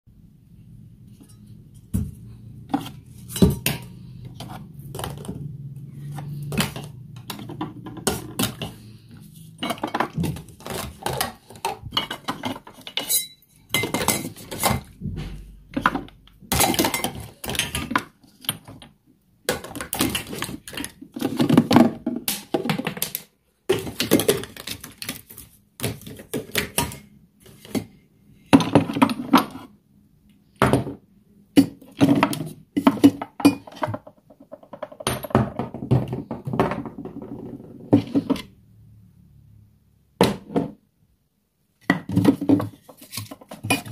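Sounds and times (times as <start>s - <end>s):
dishes and cutlery clattering: 9.6s - 15.0s, 15.7s - 18.7s, 31.6s - 34.0s, 42.1s - 43.9s.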